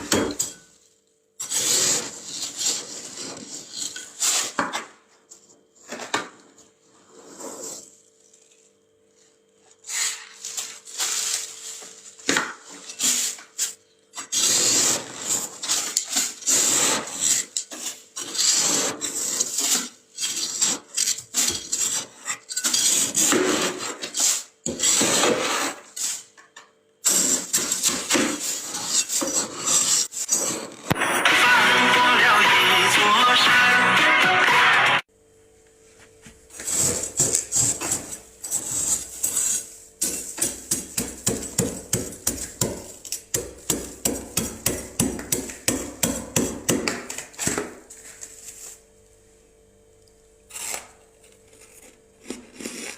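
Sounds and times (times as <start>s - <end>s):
frost scraping in a freezer: 0.0s - 26.4s, 27.0s - 31.0s, 36.5s - 49.0s, 50.4s - 52.9s.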